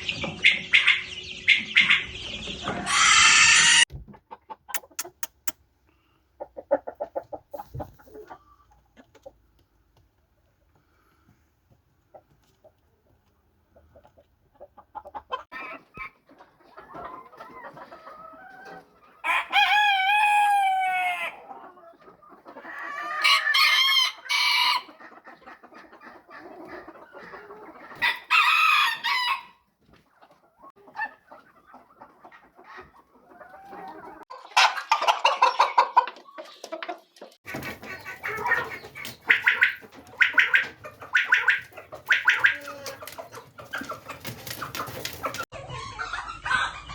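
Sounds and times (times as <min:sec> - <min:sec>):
chickens clucking: 0:00.0 - 0:46.9
roosters crowing: 0:02.7 - 0:03.9, 0:19.2 - 0:21.4, 0:22.7 - 0:24.9, 0:28.0 - 0:29.6
rapid repeated clucking: 0:04.0 - 0:05.6, 0:34.3 - 0:45.5.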